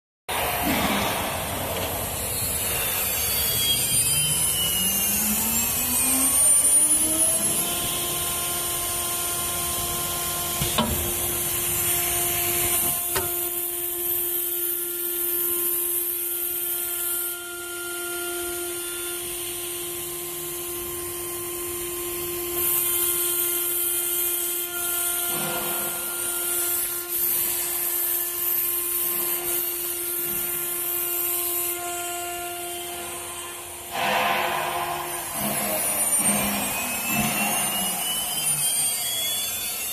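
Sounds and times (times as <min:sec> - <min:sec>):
hissing cutting noise: 0:00.3 - 0:08.3
router spindle whining: 0:00.3 - 0:39.9.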